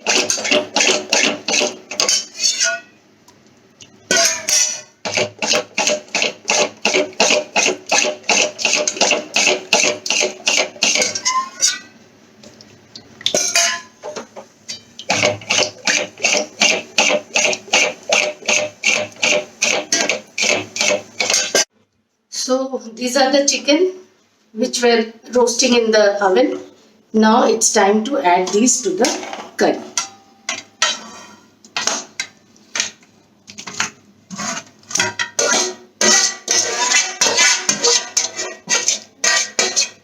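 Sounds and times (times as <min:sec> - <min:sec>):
spoon scraping a pan: 0:00.0 - 0:03.0, 0:04.1 - 0:12.0, 0:14.7 - 0:21.7, 0:30.0 - 0:32.9, 0:33.6 - 0:40.0.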